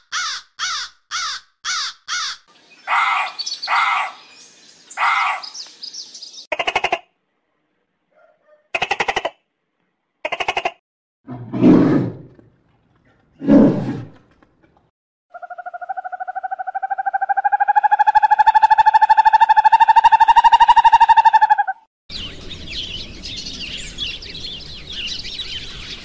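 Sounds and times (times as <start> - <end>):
big cat roaring: 11.3 - 12.5, 13.3 - 14.2
rapidly pulsed call: 15.3 - 21.8.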